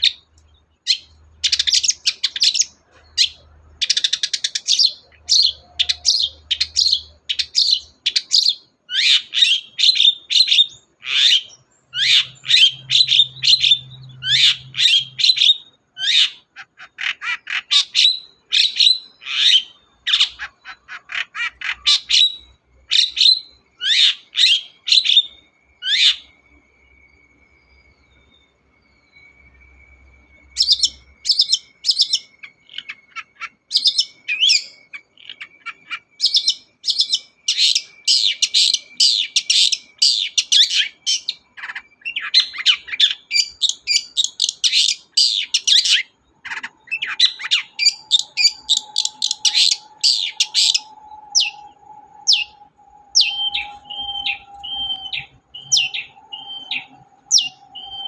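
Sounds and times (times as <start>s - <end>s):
thin steady tone: 46.2s - 58.0s
shrike singing chattering notes: 52.3s - 58.0s.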